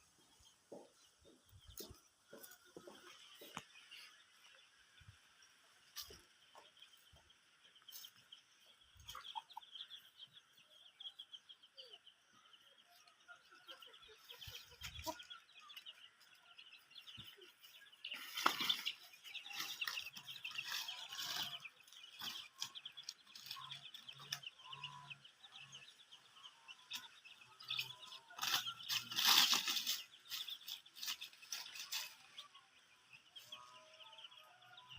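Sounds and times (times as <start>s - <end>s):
chickens clucking: 0.0s - 34.9s
chicks chirping: 0.0s - 34.9s.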